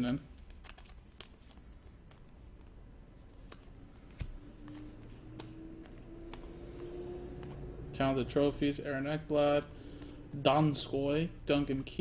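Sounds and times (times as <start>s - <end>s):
trading cards handled: 0.0s - 7.7s
cards clicking: 0.3s - 7.6s.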